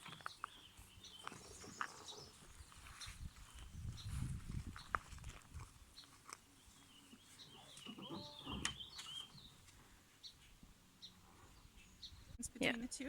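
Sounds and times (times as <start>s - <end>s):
faint bird chirping: 0.0s - 5.0s, 5.9s - 12.7s
quiet outdoor ambience: 0.0s - 13.0s.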